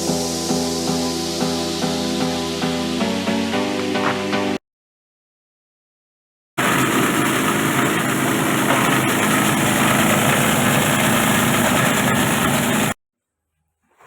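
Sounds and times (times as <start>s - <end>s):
shredder machine running: 6.6s - 13.0s.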